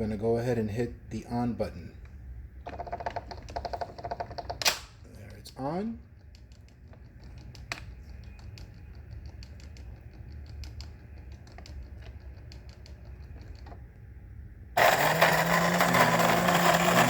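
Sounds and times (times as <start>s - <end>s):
coffee maker low hum: 11.1s - 17.0s.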